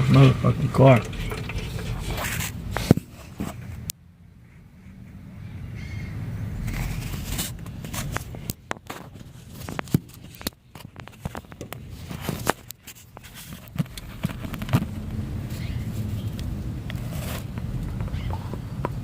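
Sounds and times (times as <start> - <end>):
clicks and knocks of handling: 6.7 - 14.9.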